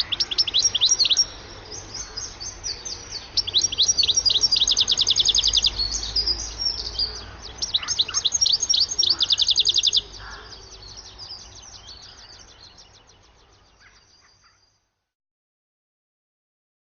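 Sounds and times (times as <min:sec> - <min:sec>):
goldfinch singing: 0:00.0 - 0:14.8.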